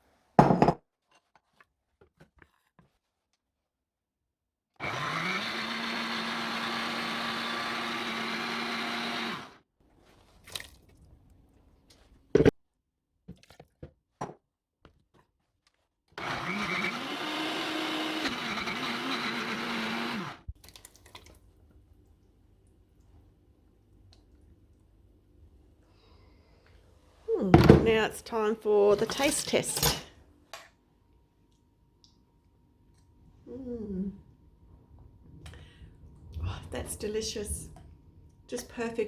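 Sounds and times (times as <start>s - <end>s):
blender motor running: 4.8s - 9.6s, 16.2s - 20.5s.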